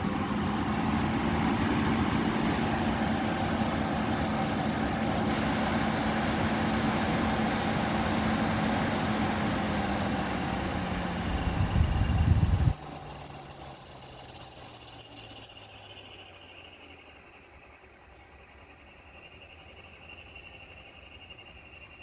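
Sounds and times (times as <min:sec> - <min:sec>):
air purifier fan hum: 0:00.0 - 0:13.0.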